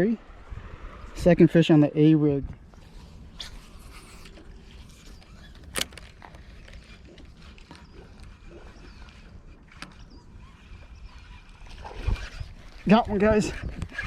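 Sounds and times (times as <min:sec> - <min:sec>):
wind rumble on microphone: 0:00.0 - 0:14.0
sharp click: 0:05.6 - 0:06.1.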